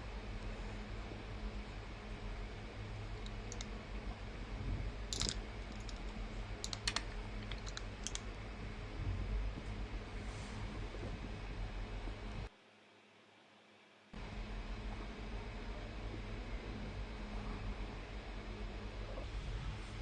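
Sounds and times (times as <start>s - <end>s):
steady low hum: 0.0s - 12.5s, 14.2s - 20.0s
small sharp clicks and taps: 5.1s - 8.3s.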